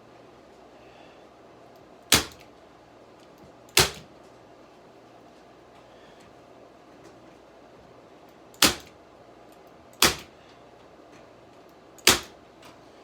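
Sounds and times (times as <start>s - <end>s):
electric staple gun firing: 2.1s - 2.5s, 3.7s - 4.1s, 8.6s - 8.9s, 10.0s - 10.3s, 12.0s - 12.4s.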